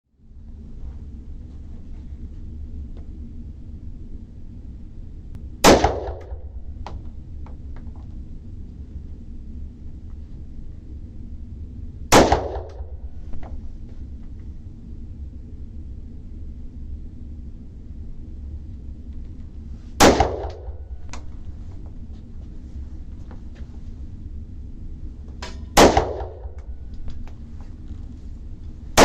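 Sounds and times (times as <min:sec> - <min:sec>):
steady low hum: 0:00.1 - 0:29.0
gunshots with echo: 0:05.6 - 0:06.5, 0:25.8 - 0:26.5.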